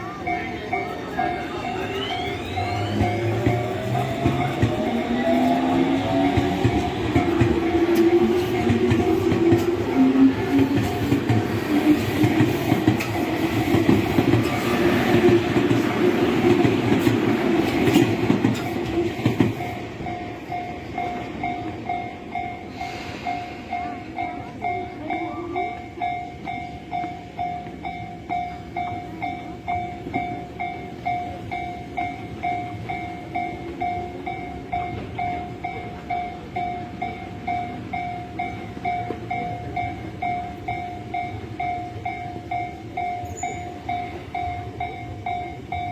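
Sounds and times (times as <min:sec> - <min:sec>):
electric train passing: 0:00.0 - 0:45.9
level crossing warning bell: 0:00.0 - 0:45.9
train wheels clacking: 0:00.4 - 0:24.4.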